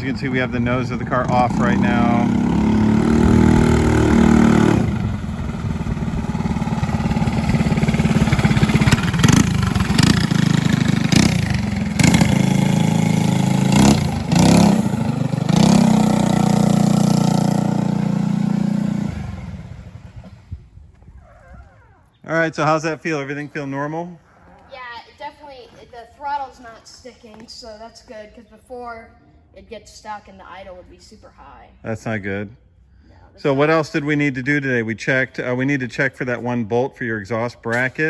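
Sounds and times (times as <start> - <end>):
go-kart engine idling and revving: 0.0 - 20.7.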